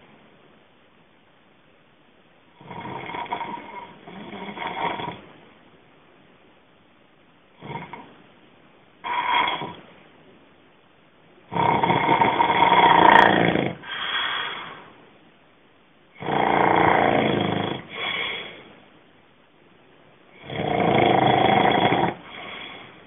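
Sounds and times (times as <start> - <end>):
person snoring loudly: 11.5 - 14.2, 16.2 - 18.4, 20.4 - 22.7.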